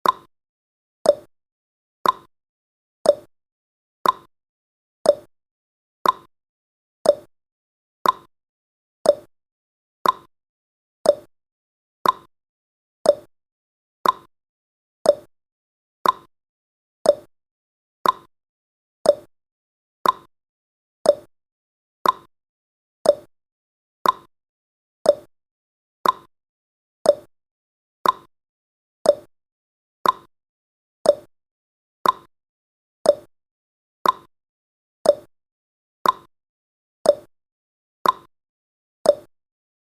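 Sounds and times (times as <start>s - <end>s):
clock ticking: 2.0s - 2.3s, 4.0s - 4.3s, 6.0s - 6.3s, 8.0s - 8.3s, 10.0s - 10.3s, 12.0s - 12.3s, 14.0s - 14.3s, 16.0s - 16.3s, 18.0s - 18.3s, 20.0s - 20.3s, 21.1s - 21.3s, 22.0s - 22.3s, 24.0s - 24.3s, 26.0s - 26.3s, 28.0s - 28.3s, 29.1s - 29.3s, 30.0s - 30.3s, 31.1s - 31.3s, 32.0s - 32.3s, 33.1s - 33.3s, 34.0s - 34.3s, 35.1s - 35.3s, 36.0s - 36.3s, 38.0s - 38.3s.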